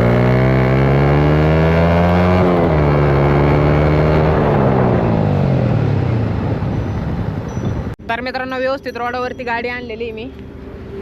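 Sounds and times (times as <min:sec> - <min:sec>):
motorcycle engine accelerating: 0:00.0 - 0:08.0.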